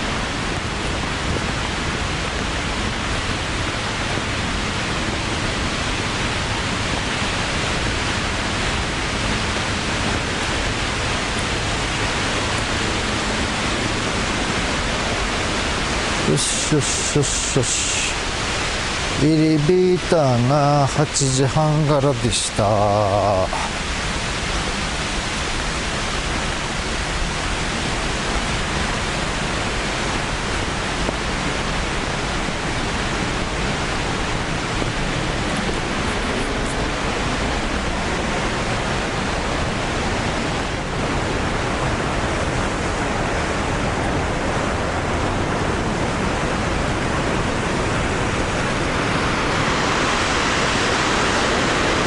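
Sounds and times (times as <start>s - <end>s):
waterfall rushing: 0.0s - 52.0s.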